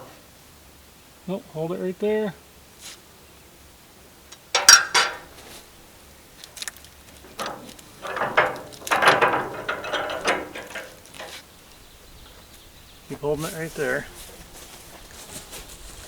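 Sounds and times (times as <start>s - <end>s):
steel hardware clanking and rattling: 4.6s - 12.6s.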